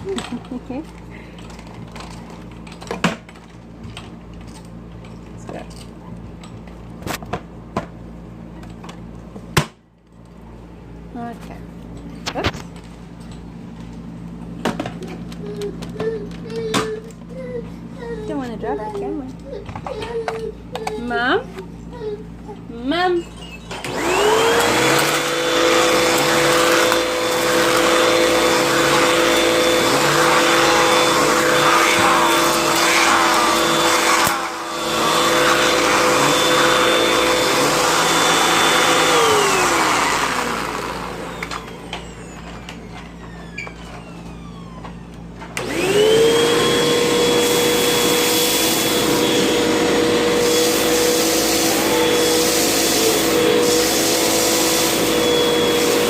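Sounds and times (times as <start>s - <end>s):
vacuum cleaner motor whine: 22.8s - 56.0s.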